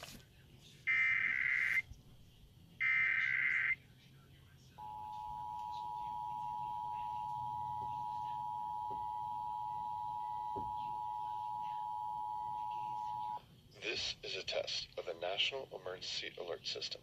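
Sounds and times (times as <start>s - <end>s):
steady two-tone alert signal: 4.8s - 13.4s.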